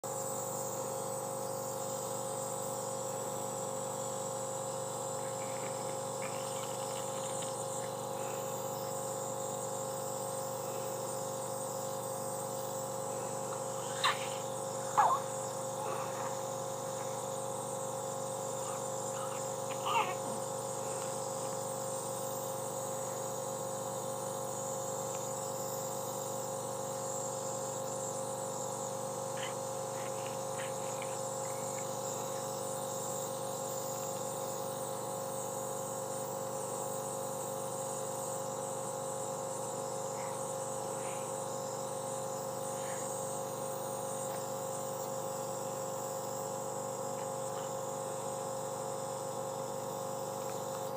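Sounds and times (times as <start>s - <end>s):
electrical hum with high whine: 0.0s - 50.9s
baby coughing: 18.6s - 20.5s.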